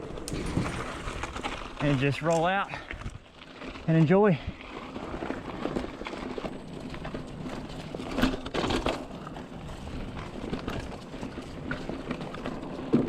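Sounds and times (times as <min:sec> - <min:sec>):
bike chain and frame rattling: 0:00.0 - 0:13.0
bike tyres on dirt: 0:00.0 - 0:13.0.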